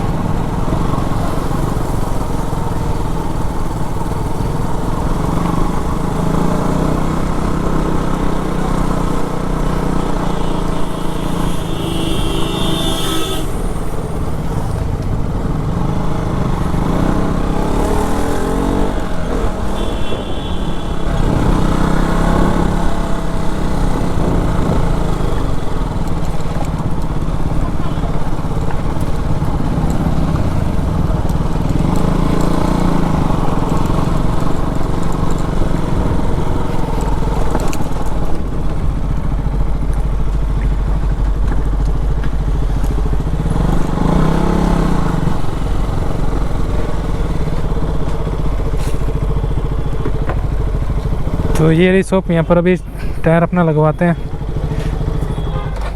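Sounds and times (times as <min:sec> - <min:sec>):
motorcycle engine running: 0:00.0 - 0:55.9
vehicle horn: 0:09.6 - 0:14.4, 0:18.6 - 0:23.8, 0:27.7 - 0:28.4, 0:54.2 - 0:55.9.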